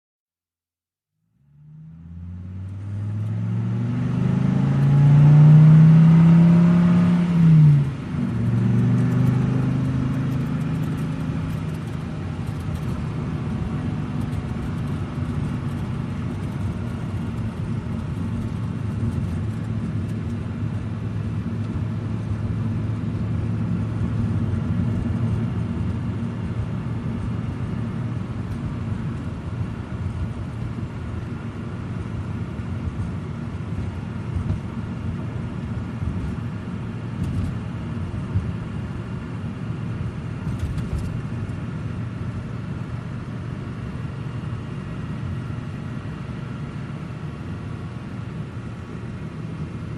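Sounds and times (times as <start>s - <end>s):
car engine pulling away: 1.5s - 30.9s.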